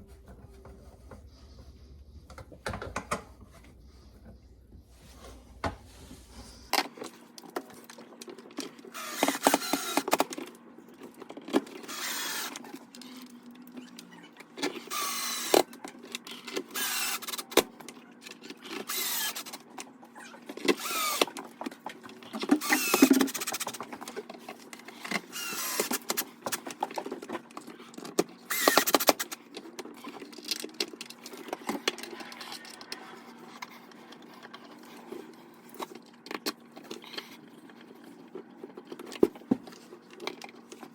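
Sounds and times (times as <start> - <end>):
cordless drill driving screws: 9.0 - 10.2, 11.9 - 12.6, 16.8 - 17.4, 18.9 - 19.6, 20.8 - 21.3, 28.5 - 29.3.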